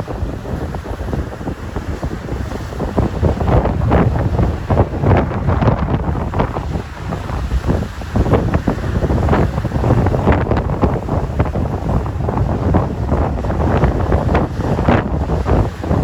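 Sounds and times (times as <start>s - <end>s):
surf breaking on rocks: 0.0s - 16.0s
wind on microphone: 0.0s - 16.0s.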